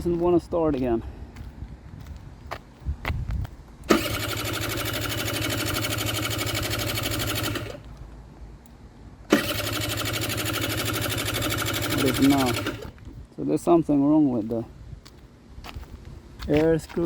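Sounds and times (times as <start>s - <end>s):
scooter engine starting and running: 3.9s - 7.9s, 9.2s - 13.0s.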